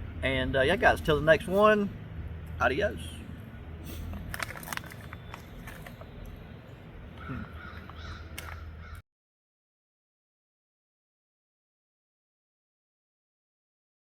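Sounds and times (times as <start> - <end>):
low steady rumble: 0.0 - 9.0
bird calling harshly: 7.2 - 9.0.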